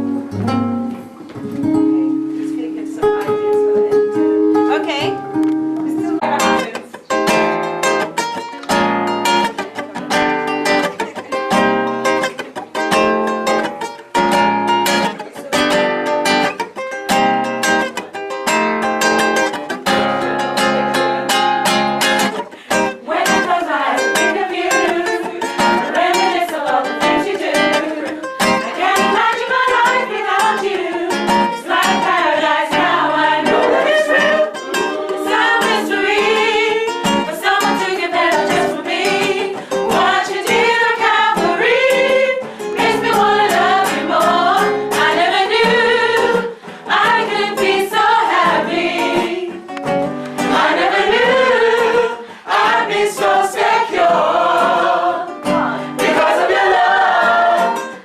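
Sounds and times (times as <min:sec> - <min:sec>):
strummed acoustic guitar: 0:00.0 - 0:58.0
choir singing in parts: 0:22.7 - 0:58.0.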